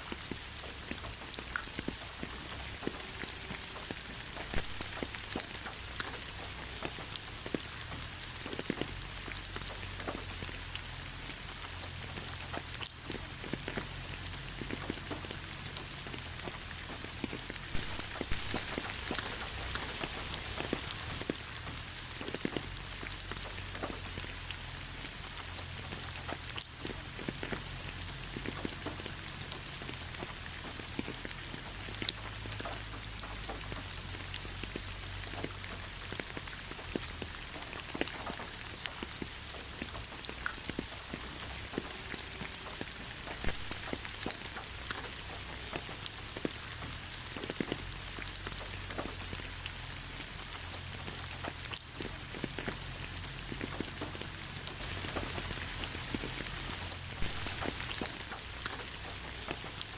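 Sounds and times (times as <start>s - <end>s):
raindrops pattering: 0.0s - 59.9s
steady rain hiss: 0.0s - 59.9s.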